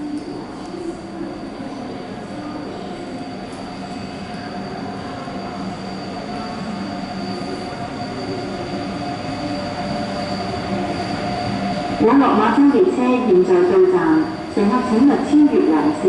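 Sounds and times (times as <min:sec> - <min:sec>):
train running on rails: 0:00.0 - 0:16.0
high wheel squeal: 0:02.5 - 0:12.8, 0:13.7 - 0:15.5.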